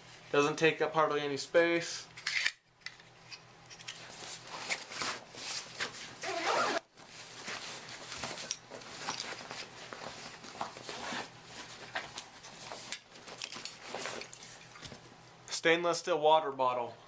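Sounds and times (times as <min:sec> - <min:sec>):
gear rustling and clattering: 0:02.2 - 0:15.0
bag zipper pulled: 0:06.2 - 0:06.9.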